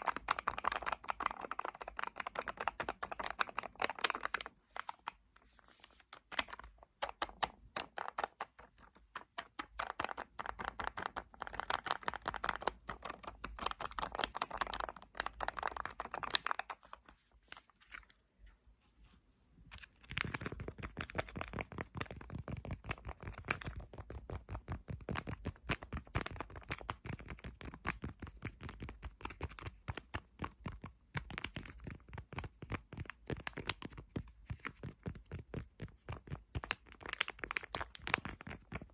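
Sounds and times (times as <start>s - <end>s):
rapid tapping on objects: 20.1s - 38.9s.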